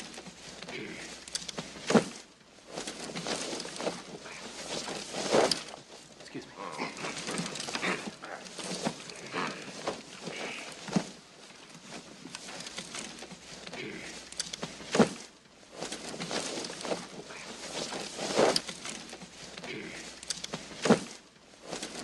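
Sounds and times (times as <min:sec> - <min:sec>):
loud snort: 0:06.6 - 0:08.4.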